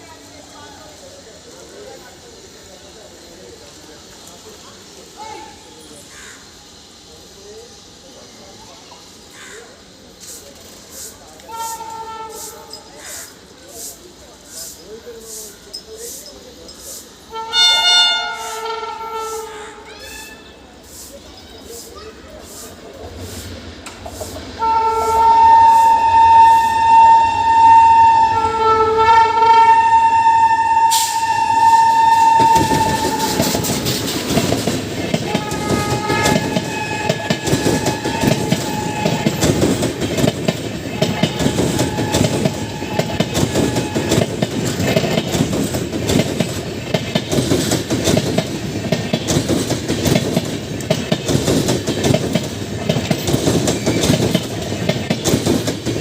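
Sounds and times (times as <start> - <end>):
train coaches rumbling: 0.0 - 56.0
locomotive horn blast: 11.5 - 12.8, 17.3 - 19.8, 24.6 - 33.7, 35.2 - 39.7, 41.0 - 44.3.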